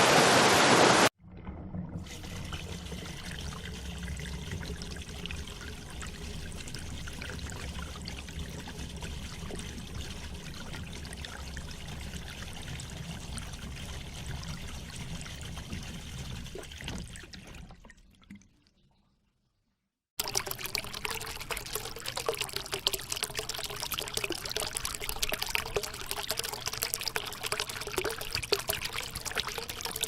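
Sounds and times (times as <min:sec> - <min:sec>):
water flowing: 0:20.2 - 0:30.0.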